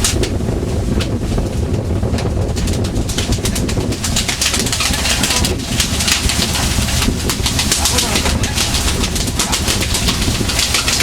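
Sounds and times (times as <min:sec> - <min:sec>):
boat engine drone: 0:00.0 - 0:11.0
hissing rush: 0:04.1 - 0:11.0.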